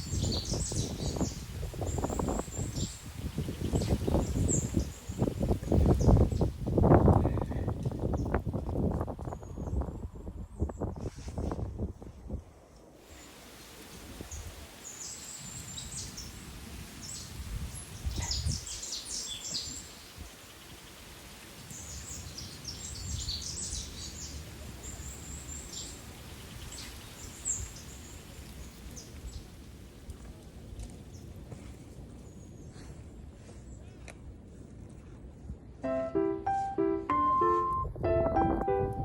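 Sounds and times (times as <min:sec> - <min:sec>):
small birds chirping: 0:00.0 - 0:06.6, 0:13.2 - 0:29.5.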